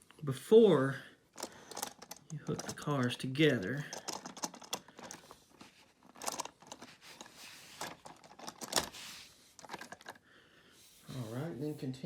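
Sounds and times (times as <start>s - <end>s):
plastic toy parts clicking: 1.4s - 5.3s, 6.0s - 9.0s, 9.6s - 10.2s.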